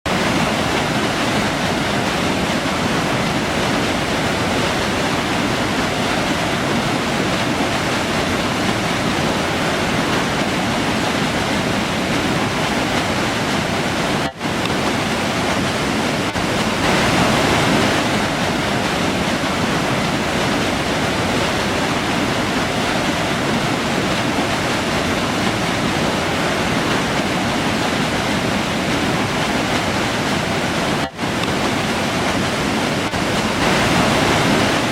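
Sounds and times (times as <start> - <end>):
river flowing: 0.1 - 34.9.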